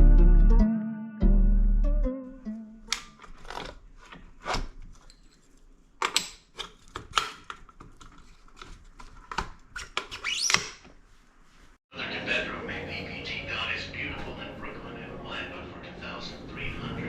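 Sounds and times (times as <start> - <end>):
tools and parts clicking and knocking: 2.9 - 10.9.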